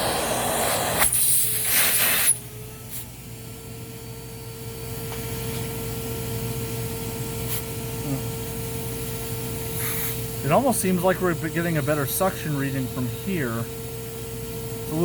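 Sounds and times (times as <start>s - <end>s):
vacuum cleaner air rushing: 0.0s - 3.2s, 9.7s - 10.8s
vacuum motor whine: 0.0s - 15.0s.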